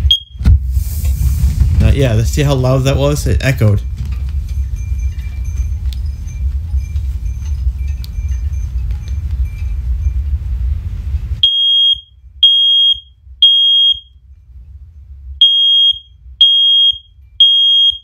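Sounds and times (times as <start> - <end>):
smoke alarm beeping: 0.0 - 0.4, 11.4 - 14.2, 15.4 - 18.0
low rumbling noise: 0.0 - 18.0.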